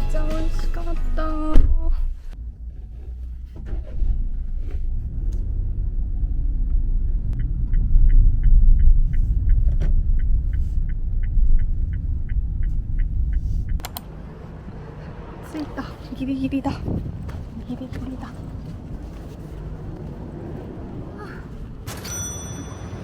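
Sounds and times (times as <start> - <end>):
car engine and road rumble: 0.0 - 23.0
turn signal clicking: 7.3 - 14.1.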